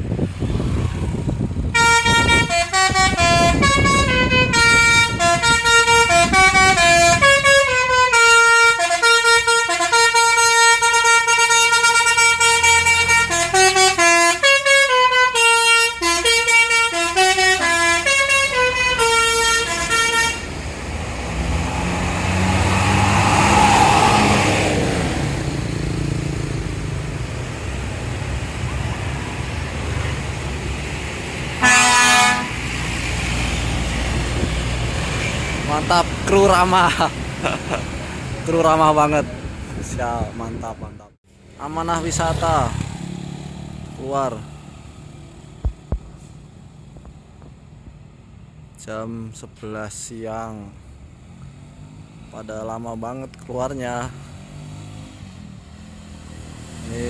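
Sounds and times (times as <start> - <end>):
vehicle passing: 0.0 - 8.1, 17.7 - 40.7, 41.3 - 47.0, 54.0 - 57.0
bus horn playing a tune: 1.6 - 20.7, 31.6 - 32.7.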